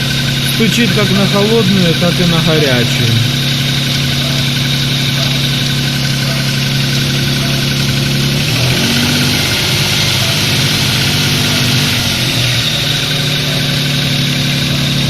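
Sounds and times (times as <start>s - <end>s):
car engine idling with knock: 0.0s - 15.0s.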